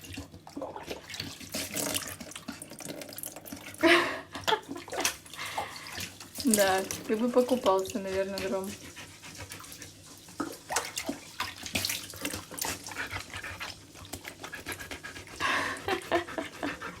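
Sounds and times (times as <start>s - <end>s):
dog lapping water: 0.0s - 17.0s
dog panting: 7.7s - 10.4s, 12.4s - 17.0s.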